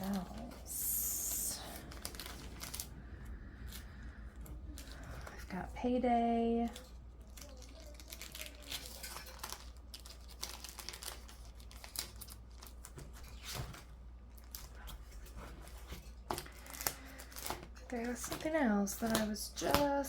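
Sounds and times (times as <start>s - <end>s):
paper rustling and crinkling: 0.0s - 5.7s, 6.3s - 20.0s.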